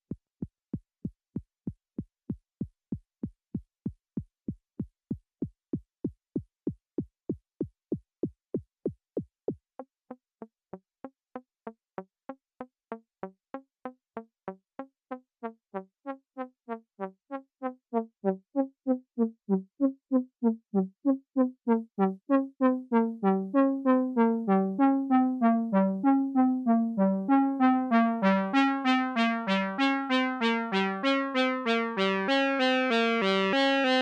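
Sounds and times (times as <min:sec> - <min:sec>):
synthesizer sequenced pattern: 0:15.7 - 0:34.0.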